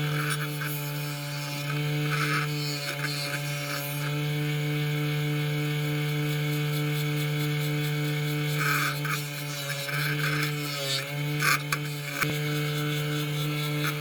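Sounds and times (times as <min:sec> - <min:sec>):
power tool motor running: 0:00.0 - 0:14.0
scraping sounds: 0:08.4 - 0:14.0.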